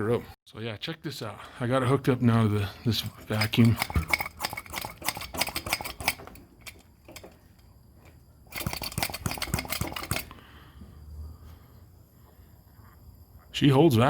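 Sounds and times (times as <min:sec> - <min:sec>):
hand vacuum pump clicking: 0:03.2 - 0:07.6, 0:08.5 - 0:10.4.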